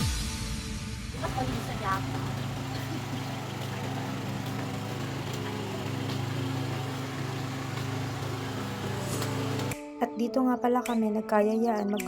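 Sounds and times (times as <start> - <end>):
engine humming: 1.2 - 9.8.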